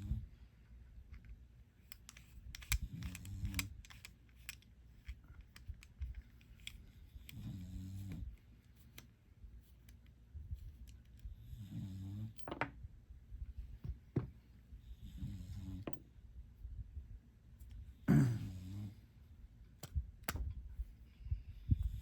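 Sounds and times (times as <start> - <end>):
metal lock parts clicking: 1.8 - 7.4.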